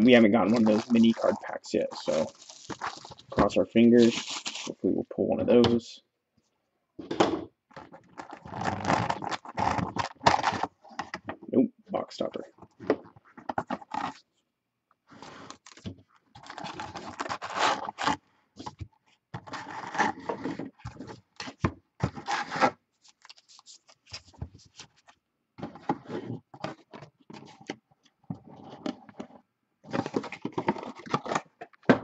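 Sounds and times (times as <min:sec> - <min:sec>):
cardboard box scraping and rubbing: 0:08.2 - 0:10.8, 0:16.4 - 0:18.2, 0:19.4 - 0:20.7, 0:22.1 - 0:22.8.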